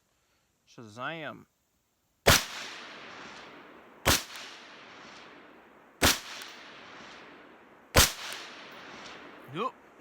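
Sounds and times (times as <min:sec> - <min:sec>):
rifle shots with echo: 0:02.3 - 0:09.4.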